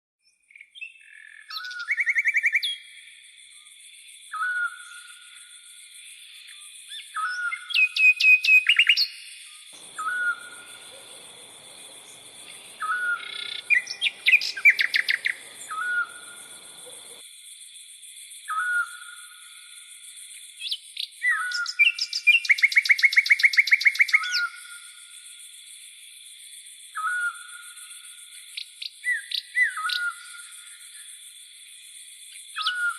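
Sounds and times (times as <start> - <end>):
bird repeating short call: 9.8 - 17.2
birds rattling trills: 9.8 - 17.2
steady high-pitched hiss: 9.8 - 18.4.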